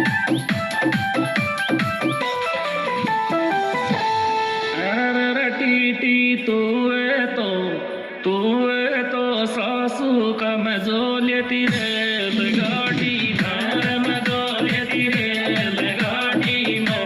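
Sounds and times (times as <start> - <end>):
folk dance music with sliding melody: 0.0 - 5.6.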